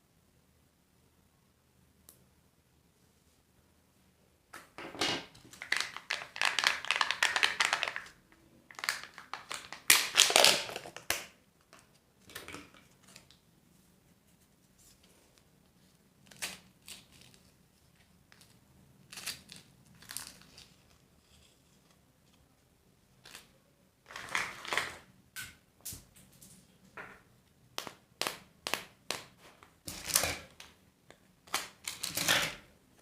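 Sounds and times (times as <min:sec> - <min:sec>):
wrapper crinkling and tearing: 0:05.5 - 0:11.4, 0:29.9 - 0:30.6.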